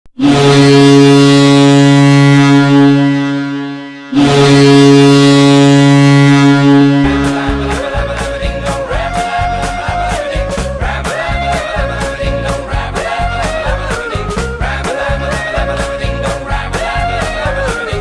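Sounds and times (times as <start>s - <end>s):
low goal horn blasts: 0.2s - 8.1s
music beat: 6.7s - 18.0s.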